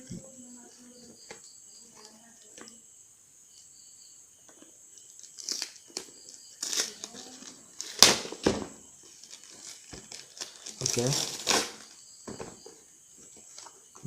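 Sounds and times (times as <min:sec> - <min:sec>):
packaging crinkling and tearing: 0:05.2 - 0:08.4, 0:09.1 - 0:12.0.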